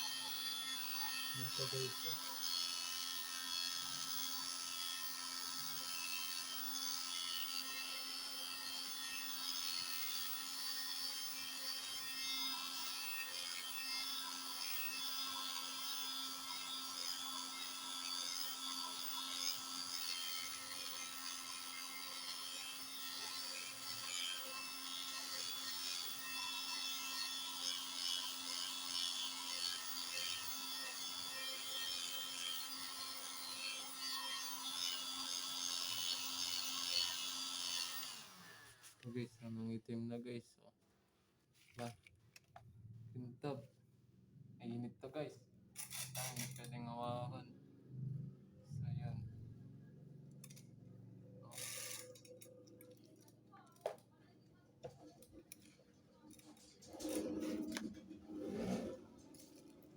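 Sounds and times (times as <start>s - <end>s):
heat gun fan whirring: 50.4s - 50.6s.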